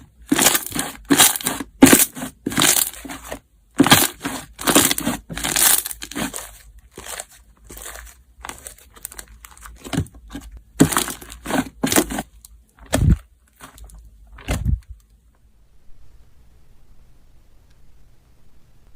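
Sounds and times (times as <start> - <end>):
slime and ice crunching: 0.0 - 14.8.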